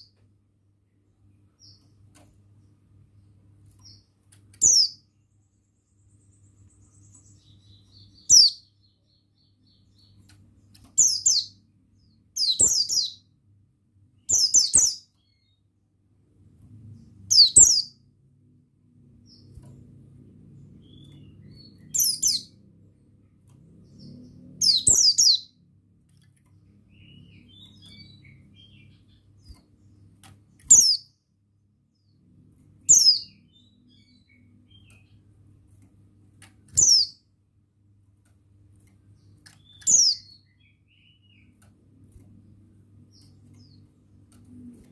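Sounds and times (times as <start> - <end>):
faint low hum: 0.0 - 44.9
bird chirping high downward notes: 3.8 - 13.4, 14.2 - 15.7, 16.8 - 18.1, 18.9 - 25.8, 26.6 - 31.2, 31.9 - 35.3, 36.7 - 37.3, 39.2 - 41.7.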